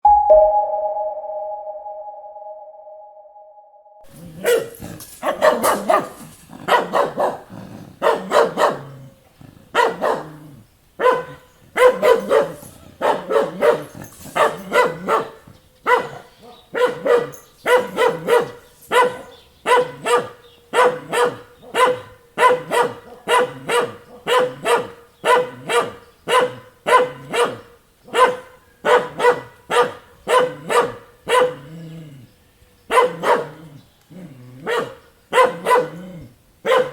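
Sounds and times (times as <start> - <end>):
dog barking: 4.4 - 9.0, 9.7 - 10.4, 11.0 - 31.7, 32.9 - 33.7, 34.6 - 36.0, 36.6 - 36.9.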